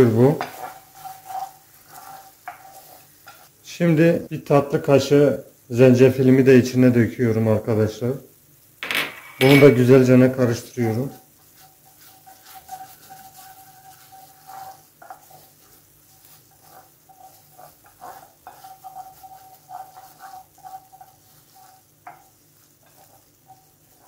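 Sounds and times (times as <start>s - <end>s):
spoon stirring and scraping pan: 0.0s - 7.1s, 8.4s - 24.0s
light sizzling: 0.0s - 24.0s
spoon squeaking on pan: 0.6s - 2.9s
spoon tapping pan: 17.0s - 24.0s.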